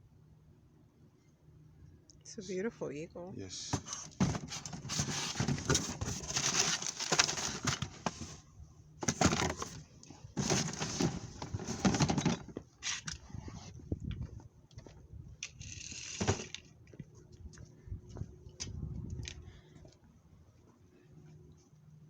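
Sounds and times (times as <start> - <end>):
rummaging through belongings: 3.7 - 13.7.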